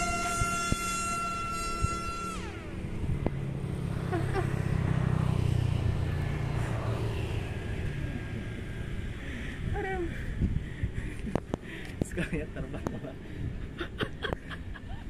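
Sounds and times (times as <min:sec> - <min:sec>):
model jet electric motor humming: 0:00.0 - 0:03.5
wind noise: 0:00.0 - 0:04.9, 0:06.5 - 0:15.0.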